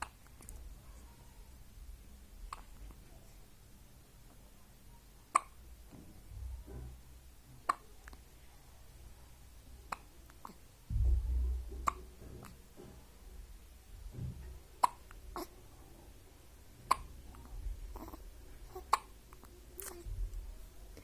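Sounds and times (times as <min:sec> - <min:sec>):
baby hiccuping: 0:02.5 - 0:02.8, 0:05.3 - 0:05.6, 0:07.6 - 0:08.2, 0:09.9 - 0:10.6, 0:14.8 - 0:15.5, 0:16.9 - 0:17.3, 0:17.9 - 0:20.1
low rumble: 0:10.9 - 0:11.9.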